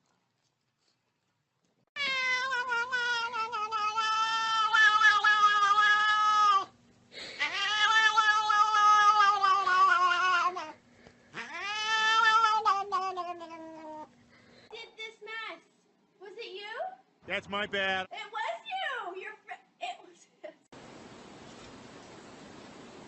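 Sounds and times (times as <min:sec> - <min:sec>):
cat yowling: 0:02.0 - 0:06.7, 0:07.4 - 0:10.8, 0:11.4 - 0:14.1.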